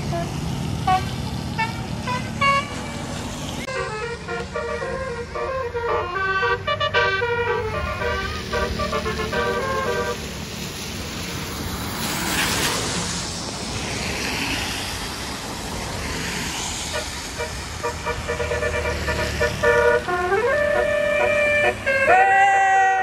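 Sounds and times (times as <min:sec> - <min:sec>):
multi-tone bus air horn melody: 0:00.0 - 0:03.1, 0:03.7 - 0:10.4, 0:16.9 - 0:23.0
bus engine and road noise: 0:00.0 - 0:23.0
rush of air: 0:10.3 - 0:17.0.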